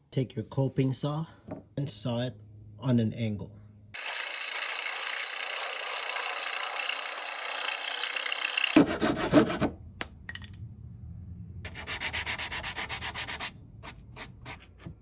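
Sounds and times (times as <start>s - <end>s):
coping saw rasping through wood: 4.0s - 9.7s
faint low hum: 8.8s - 15.0s.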